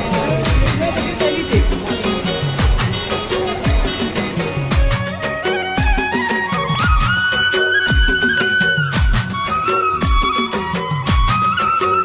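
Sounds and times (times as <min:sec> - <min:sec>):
plucked string melody: 0:00.0 - 0:05.1.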